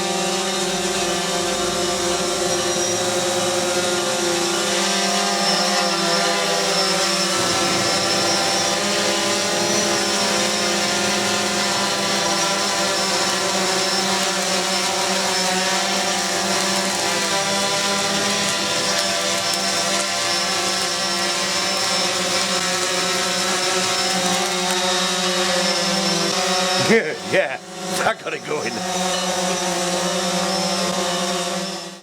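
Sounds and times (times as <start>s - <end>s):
drone propellers whining: 6.2s - 11.6s.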